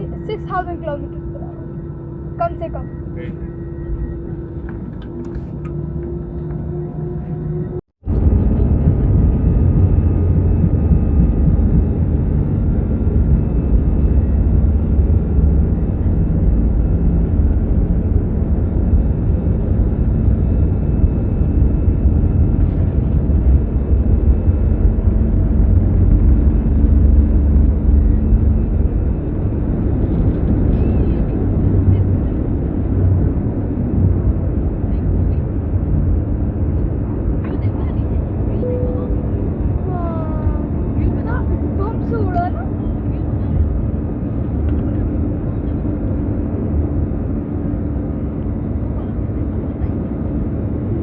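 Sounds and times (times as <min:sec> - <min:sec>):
jet airliner cabin rumble: 0:00.0 - 0:51.0.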